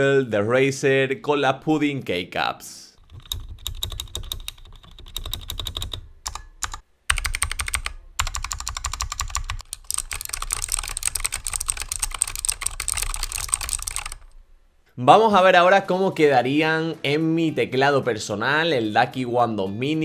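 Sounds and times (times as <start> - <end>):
rapid keyboard typing: 3.0 - 14.4.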